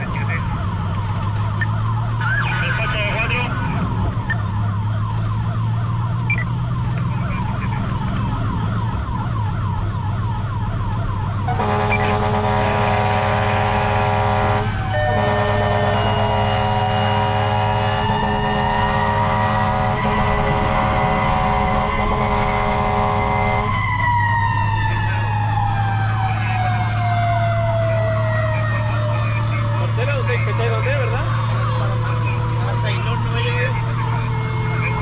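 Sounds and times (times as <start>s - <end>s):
siren yelp: 0.0s - 35.0s
truck engine hum: 0.0s - 35.0s
many-toned horn: 11.5s - 23.8s
siren winding up: 14.8s - 20.3s.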